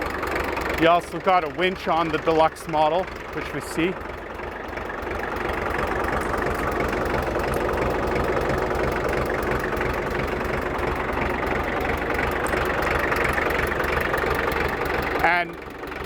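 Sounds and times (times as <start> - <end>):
diesel engine idling: 0.0 - 16.0.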